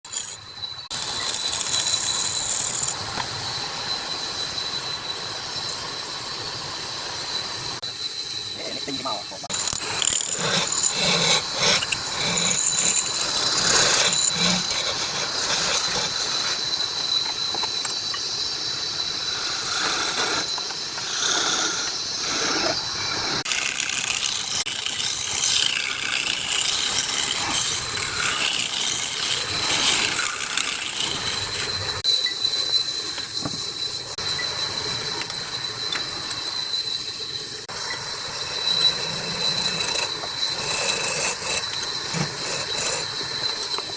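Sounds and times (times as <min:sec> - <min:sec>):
turning tool scraping and squealing: 0:00.1 - 0:43.9
wood lathe whine: 0:00.1 - 0:43.9.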